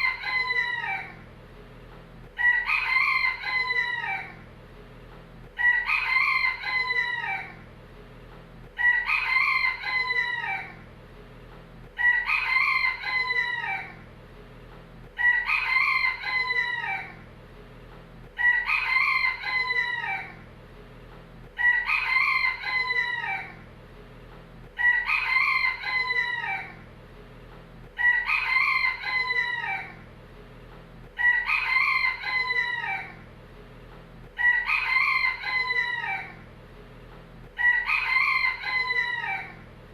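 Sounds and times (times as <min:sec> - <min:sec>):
rooster crowing: 0:00.0 - 0:01.2, 0:02.4 - 0:04.4, 0:05.6 - 0:07.6, 0:08.8 - 0:10.8, 0:12.0 - 0:14.0, 0:15.2 - 0:17.2, 0:18.4 - 0:20.4, 0:21.6 - 0:23.6, 0:24.8 - 0:26.8, 0:28.0 - 0:30.0, 0:31.2 - 0:33.2, 0:34.4 - 0:36.4, 0:37.6 - 0:39.6.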